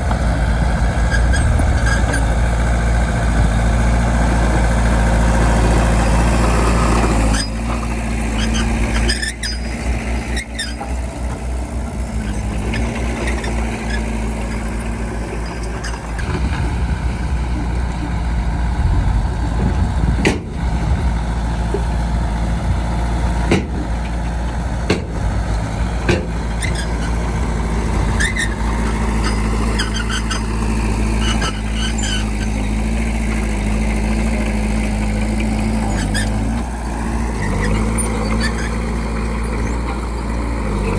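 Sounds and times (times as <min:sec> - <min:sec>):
bulldozer diesel engine running: 0:00.0 - 0:40.9
sharp metal knocks and clanks: 0:19.6 - 0:20.6, 0:23.4 - 0:25.3, 0:26.0 - 0:27.1.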